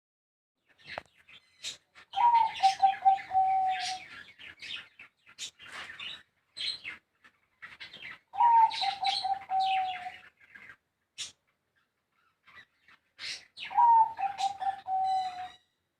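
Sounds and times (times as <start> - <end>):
small birds chirping: 0.6 - 15.9
dove cooing: 2.1 - 4.3, 8.0 - 10.3, 13.6 - 15.6.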